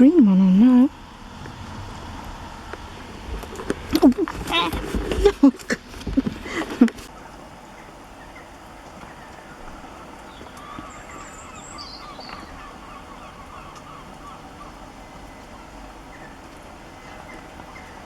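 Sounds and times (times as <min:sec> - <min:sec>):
birds chattering: 0:00.0 - 0:18.0
rain hissing: 0:00.0 - 0:18.0
high bird chirps: 0:10.3 - 0:14.7.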